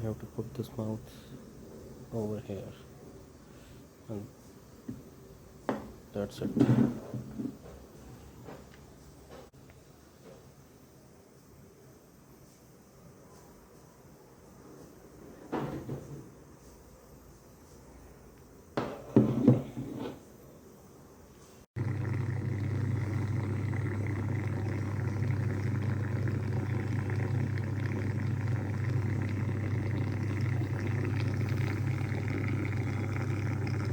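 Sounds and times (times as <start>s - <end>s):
steam vaporizer humming: 21.8s - 33.9s.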